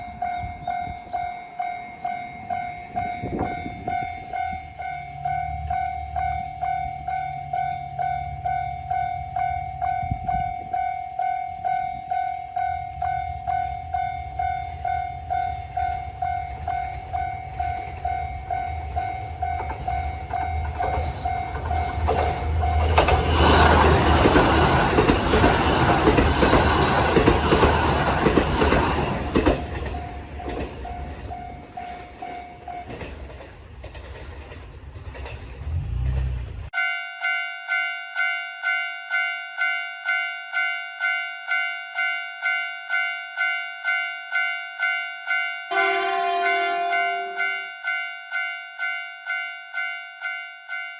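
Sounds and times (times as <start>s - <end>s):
railroad crossing bell ringing: 0.0s - 33.3s, 36.8s - 50.9s
train wheels clattering on rails: 17.8s - 36.5s.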